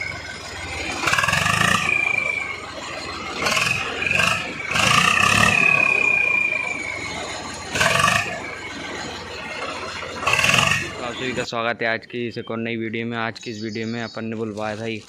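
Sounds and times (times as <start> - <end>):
turbo whistle shrieking: 0.0 - 11.5
tractor diesel engine revving: 0.0 - 14.8.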